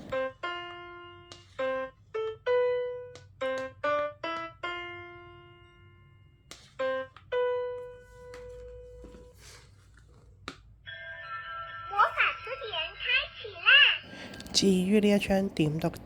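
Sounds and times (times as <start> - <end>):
single piano notes: 0.0 - 9.4.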